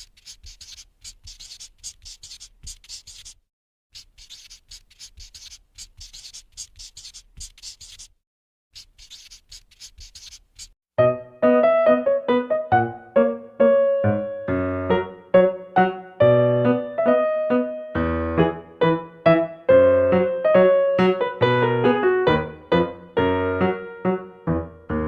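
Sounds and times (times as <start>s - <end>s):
pencil scratching on paper: 0.0s - 10.8s
piano music: 11.0s - 25.0s.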